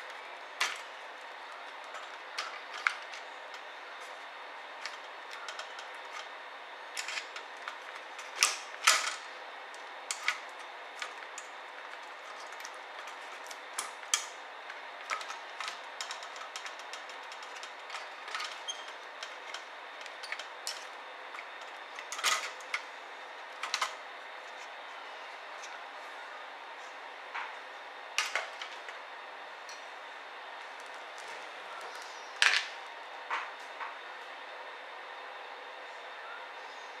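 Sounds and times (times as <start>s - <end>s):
laptop parts clicking and tapping: 4.8s - 6.3s, 10.1s - 22.8s.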